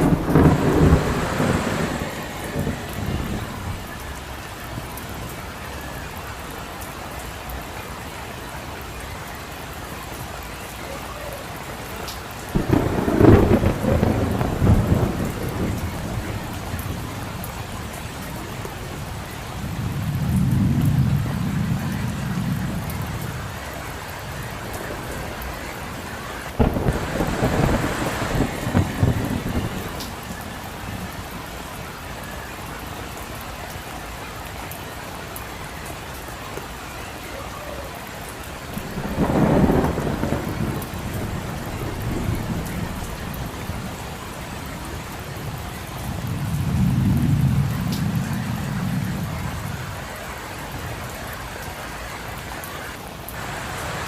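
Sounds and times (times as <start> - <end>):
thunder cracking and rumbling: 0.0 - 5.3, 12.3 - 31.5, 38.7 - 50.3
steady rain: 0.0 - 54.0.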